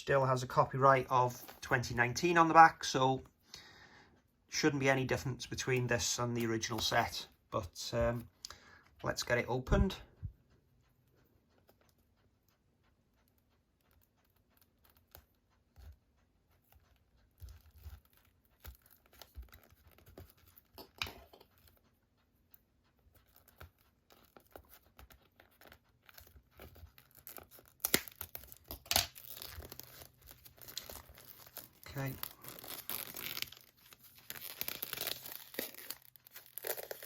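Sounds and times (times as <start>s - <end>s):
handling scratches and rustles: 1.3s - 2.4s, 13.1s - 37.0s
plastic wrapping tearing: 26.9s - 37.0s.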